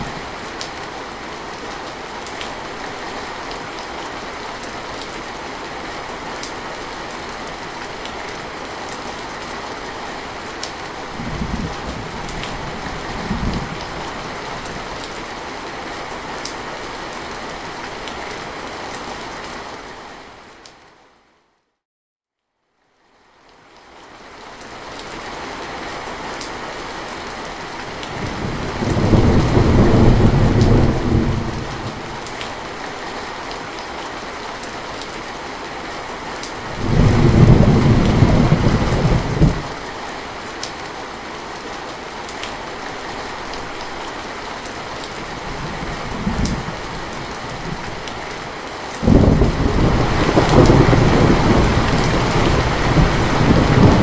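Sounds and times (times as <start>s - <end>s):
steady rain: 0.0s - 21.6s, 22.7s - 54.0s
rolling thunder: 28.2s - 32.3s, 36.7s - 39.8s, 49.0s - 54.0s.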